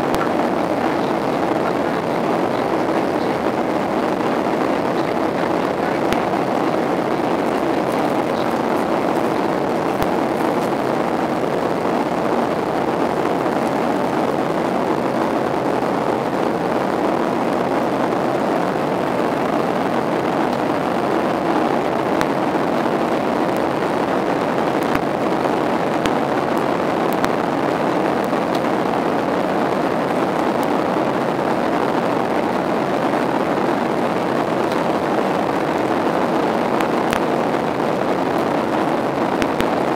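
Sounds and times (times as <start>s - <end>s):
airplane cabin engine rush: 0.0s - 15.0s.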